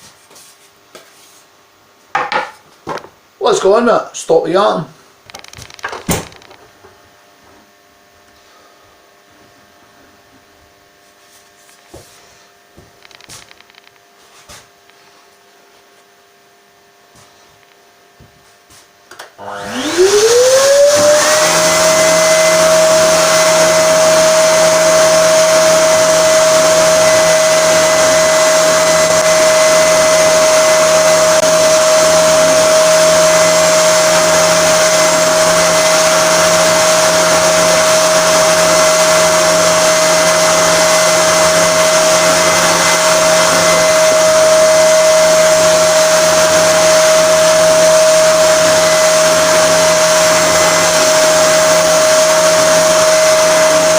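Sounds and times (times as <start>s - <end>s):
electric motor whining: 19.4s - 53.9s.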